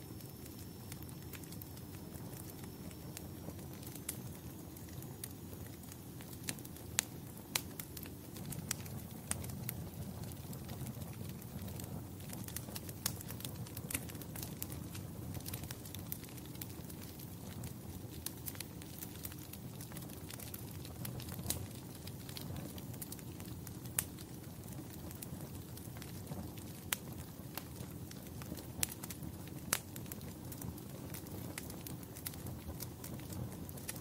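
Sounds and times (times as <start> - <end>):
wood fire crackling: 0.0 - 34.0
sharp fire pops: 0.2 - 34.0.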